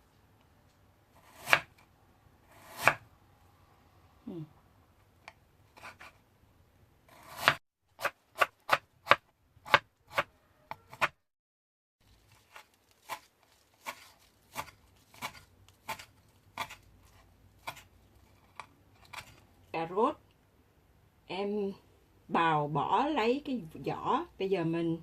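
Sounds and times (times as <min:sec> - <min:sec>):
knife slicing onion on board: 0:01.2 - 0:01.8, 0:02.5 - 0:03.0, 0:05.2 - 0:06.2, 0:07.1 - 0:11.2, 0:12.4 - 0:19.4.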